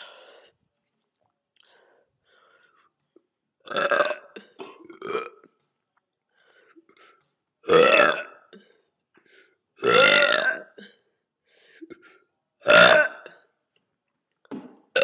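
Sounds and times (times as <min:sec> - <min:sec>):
woman burping loudly: 0:03.7 - 0:05.5, 0:07.7 - 0:08.6, 0:09.8 - 0:11.0, 0:12.6 - 0:13.4.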